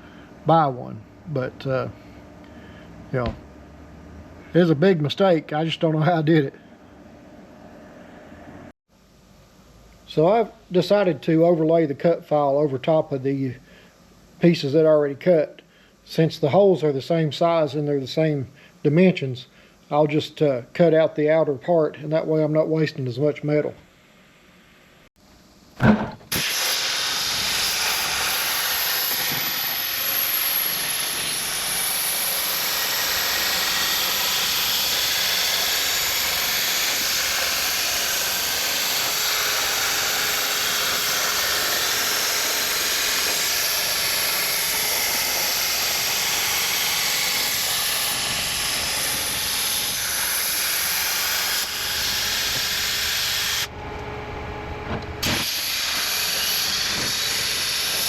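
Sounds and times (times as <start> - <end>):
cutting torch hissing: 26.3 - 53.7, 55.2 - 58.0.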